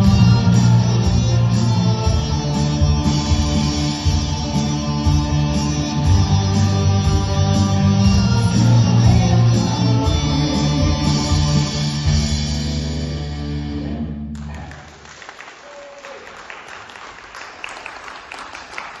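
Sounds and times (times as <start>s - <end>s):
audience applause: 14.4s - 19.0s.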